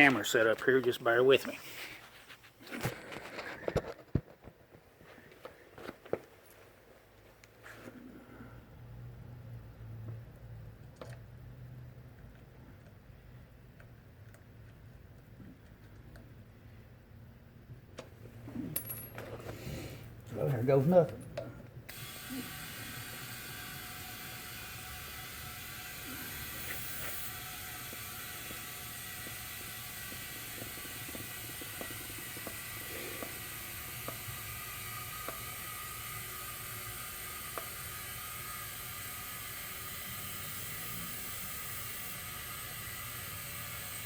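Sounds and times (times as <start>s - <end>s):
compressed air hissing: 19.4s - 20.1s, 21.9s - 44.0s.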